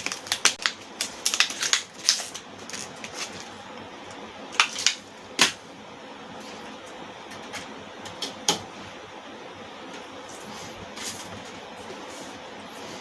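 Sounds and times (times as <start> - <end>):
packaging crackling and clicking: 0.0 - 5.6.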